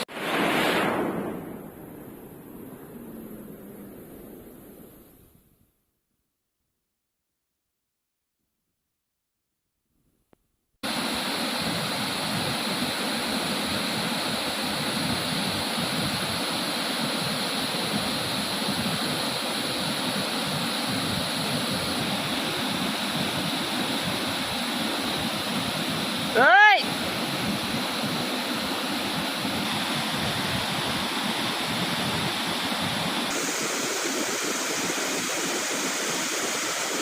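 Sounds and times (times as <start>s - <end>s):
waterfall rushing: 10.9s - 37.0s.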